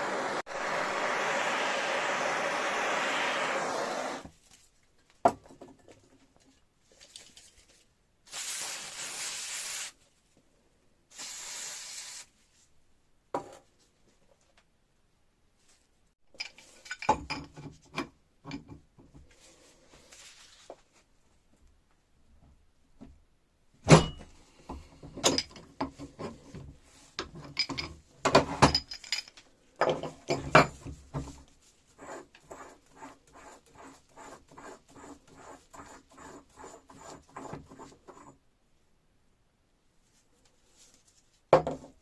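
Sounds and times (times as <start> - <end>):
short hissing bursts: 0.0 - 4.3, 8.3 - 10.0, 11.1 - 12.4
steady hiss: 0.0 - 4.3, 8.3 - 10.0, 11.1 - 12.4
metal parts clinking: 16.4 - 17.5, 28.7 - 29.4.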